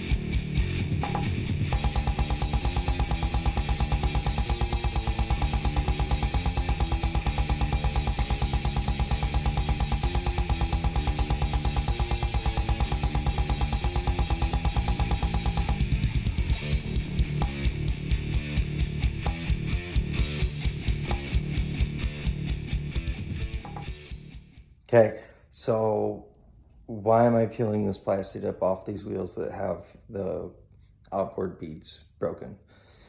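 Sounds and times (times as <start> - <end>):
fast rock music: 0.0 - 24.6.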